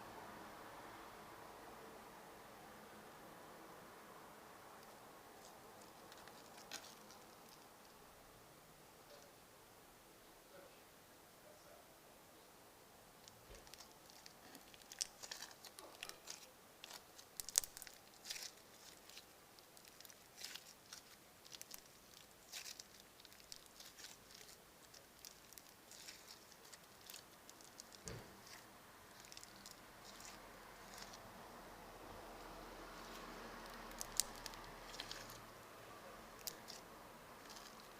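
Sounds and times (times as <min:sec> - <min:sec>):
faint traffic rumble: 0:00.0 - 0:37.9
crunchy slime crackling: 0:04.8 - 0:08.0, 0:13.2 - 0:37.9.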